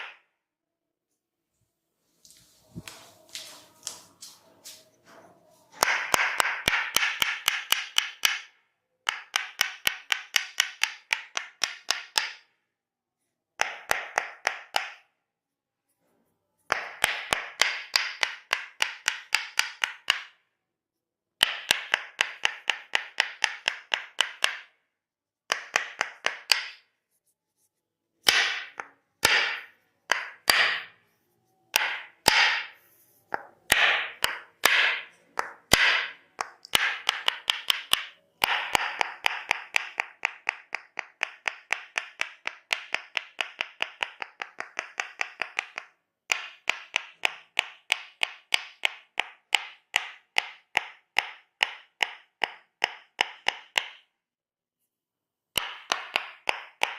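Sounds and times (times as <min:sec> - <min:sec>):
percussive massage strikes: 0:05.8 - 0:08.5, 0:28.3 - 0:30.9, 0:31.8 - 0:54.0, 0:55.6 - 0:56.9.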